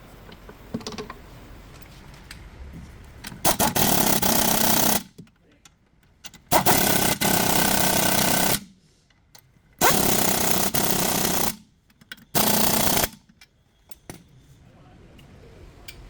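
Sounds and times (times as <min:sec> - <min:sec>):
pneumatic impact wrench hammering: 0:03.3 - 0:05.3, 0:06.2 - 0:08.7, 0:09.8 - 0:14.2.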